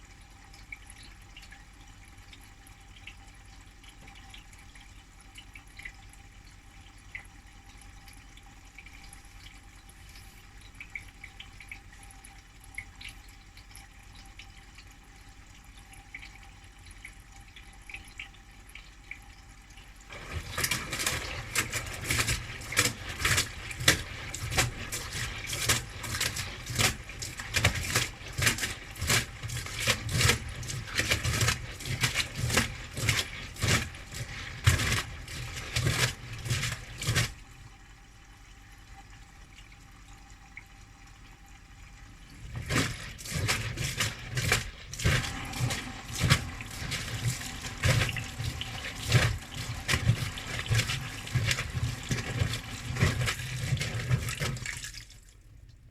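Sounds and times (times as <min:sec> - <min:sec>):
water sloshing in drum: 0:07.0 - 0:41.0, 0:41.6 - 0:55.9
washing machine drum tumbling: 0:20.1 - 0:37.4, 0:42.4 - 0:54.9.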